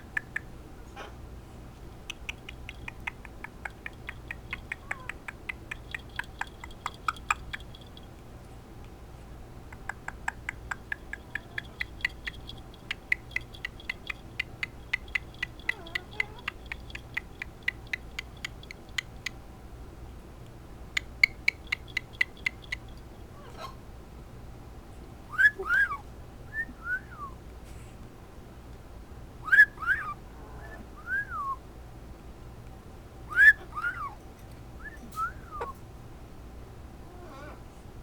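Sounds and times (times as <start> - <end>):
macaw clicking: 0.0 - 0.5, 2.0 - 8.1, 9.7 - 19.4, 20.9 - 23.0.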